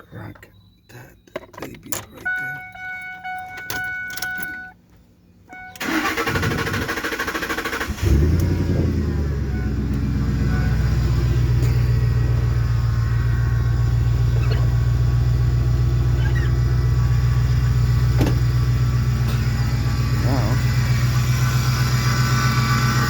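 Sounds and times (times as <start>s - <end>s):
car warning chime: 0.0s - 4.8s, 5.4s - 6.3s, 7.7s - 23.0s
car engine idling: 0.9s - 23.0s
starter cranking engine: 5.7s - 23.0s.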